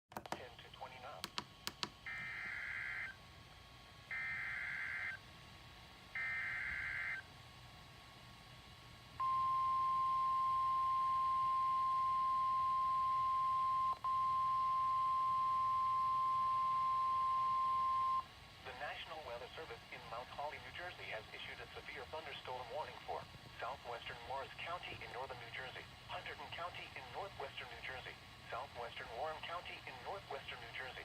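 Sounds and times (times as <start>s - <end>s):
steady warning alarm tone: 2.1s - 3.2s, 4.1s - 5.2s, 6.1s - 7.2s, 9.2s - 18.2s.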